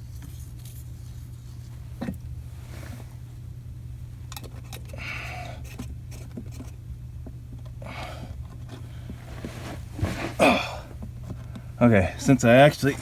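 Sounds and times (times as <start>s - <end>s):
steady low hum: 0.0s - 13.0s
soft rustling swishes: 9.2s - 10.4s.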